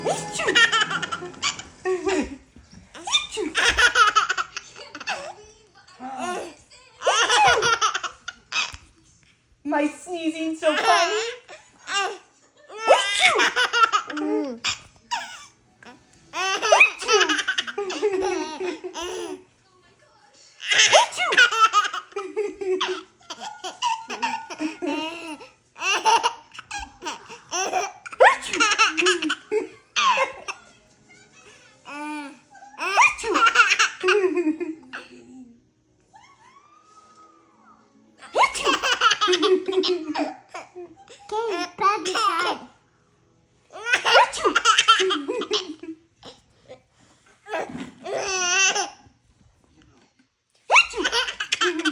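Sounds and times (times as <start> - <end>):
baby laughing: 0.0 - 5.4, 6.2 - 8.8, 10.7 - 19.4, 20.6 - 30.7, 31.9 - 35.1, 38.2 - 42.7, 43.8 - 46.0, 50.7 - 51.9.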